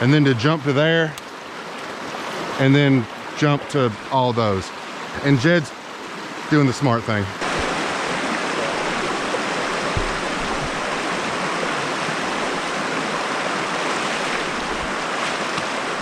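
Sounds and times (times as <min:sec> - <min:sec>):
creek water rushing: 0:00.0 - 0:16.0
faint low thumps: 0:08.8 - 0:11.2.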